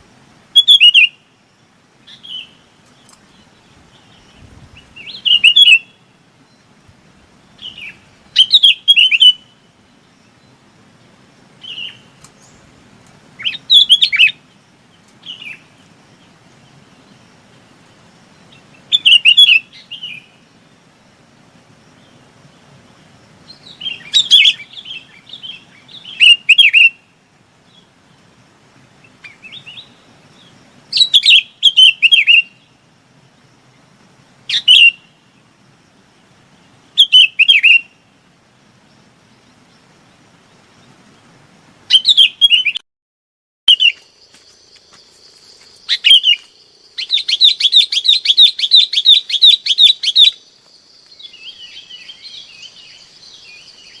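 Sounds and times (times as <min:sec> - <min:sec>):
bulbul chirping calls: 0:00.6 - 0:01.3, 0:02.1 - 0:06.1, 0:07.6 - 0:09.6, 0:13.4 - 0:14.5, 0:18.5 - 0:20.4, 0:23.5 - 0:27.1, 0:30.9 - 0:32.8, 0:34.5 - 0:35.2, 0:37.0 - 0:38.0, 0:41.9 - 0:42.8, 0:43.7 - 0:45.0, 0:45.8 - 0:54.0.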